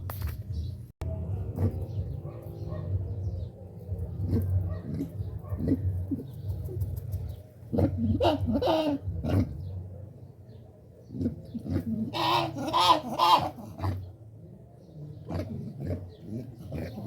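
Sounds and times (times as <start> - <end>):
peccary calls: 7.7 - 9.6, 11.2 - 14.1.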